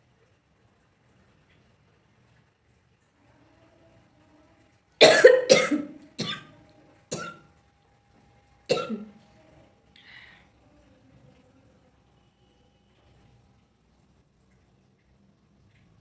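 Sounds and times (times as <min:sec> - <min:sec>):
person coughing harshly: 0:05.0 - 0:06.5, 0:07.1 - 0:07.4, 0:08.7 - 0:09.1.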